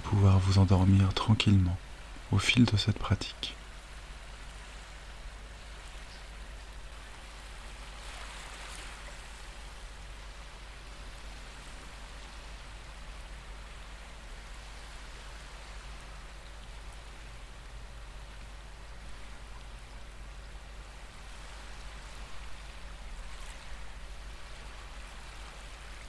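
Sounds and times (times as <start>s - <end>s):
ocean waves washing: 0.0s - 26.0s.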